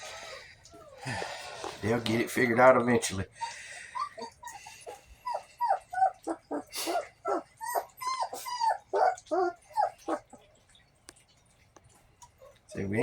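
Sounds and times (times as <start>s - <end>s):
puppies whining and yelping: 0.1s - 1.7s, 3.4s - 10.6s.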